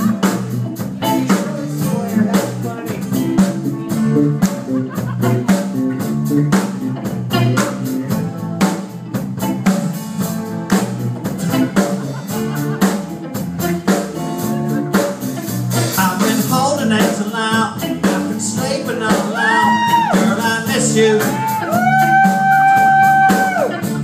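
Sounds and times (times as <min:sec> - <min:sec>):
bass: 0:00.0 - 0:24.0
guitar: 0:00.0 - 0:24.0
steady drum beat: 0:00.0 - 0:24.0.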